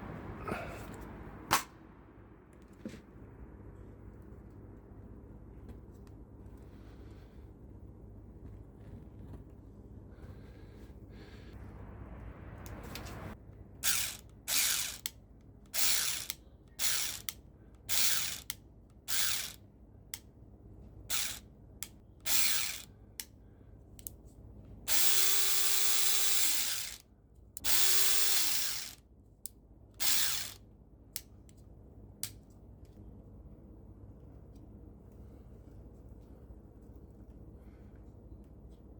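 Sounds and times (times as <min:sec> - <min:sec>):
airsoft gun motor whine bursts: 0:13.8 - 0:15.1, 0:15.8 - 0:17.3, 0:17.9 - 0:18.5, 0:19.1 - 0:19.6, 0:21.1 - 0:21.4, 0:22.3 - 0:22.9, 0:24.9 - 0:27.0, 0:27.6 - 0:29.0, 0:30.0 - 0:30.6.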